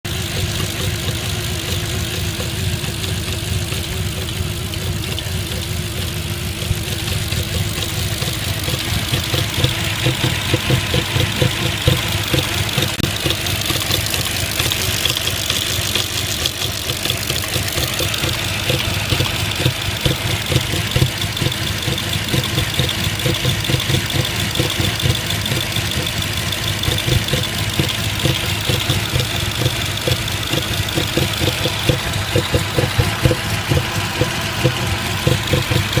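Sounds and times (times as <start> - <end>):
car engine idling unevenly: 0.0 - 36.0.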